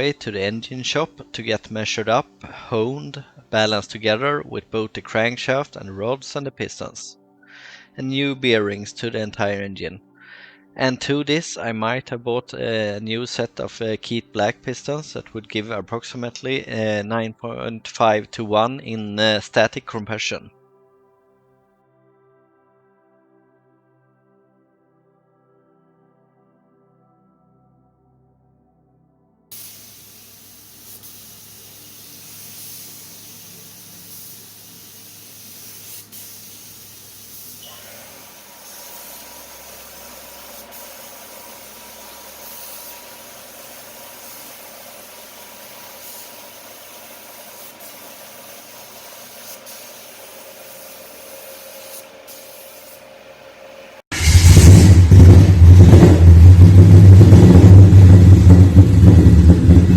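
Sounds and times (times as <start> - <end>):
faint steady hiss: 0.0 - 17.7, 29.5 - 54.1
loud deep engine running: 54.2 - 59.9.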